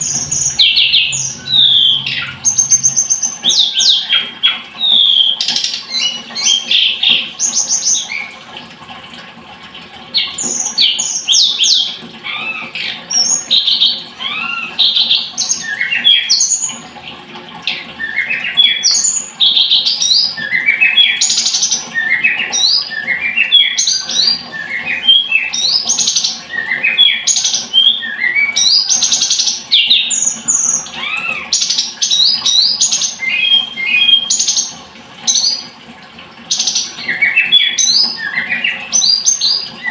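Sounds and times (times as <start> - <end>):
songbird singing: 0.0 - 5.2.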